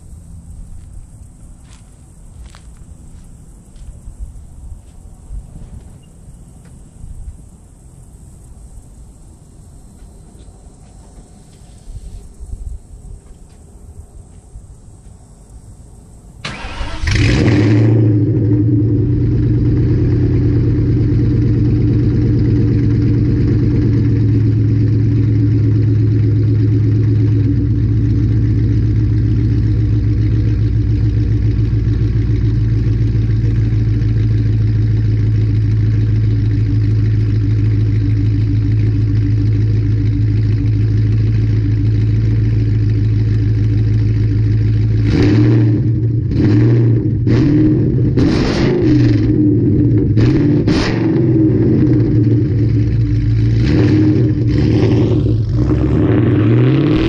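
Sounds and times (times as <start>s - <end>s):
car exhaust idling: 0.0s - 15.4s, 16.4s - 57.0s
car engine starting: 16.4s - 57.0s.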